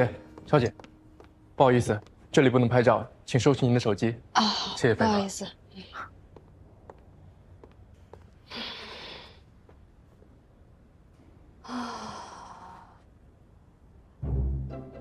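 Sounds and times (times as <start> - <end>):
woman sighing: 11.6 - 13.0.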